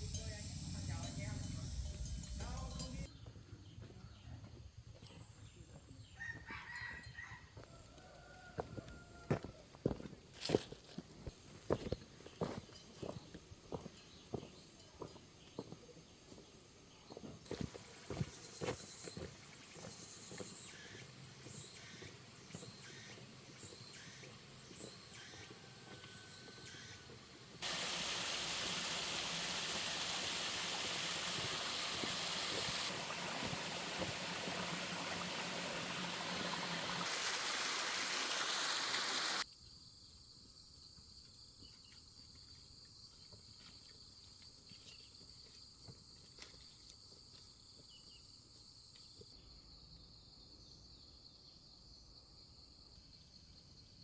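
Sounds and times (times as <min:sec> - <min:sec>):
faint high-pitched drone: 0:00.0 - 0:03.1.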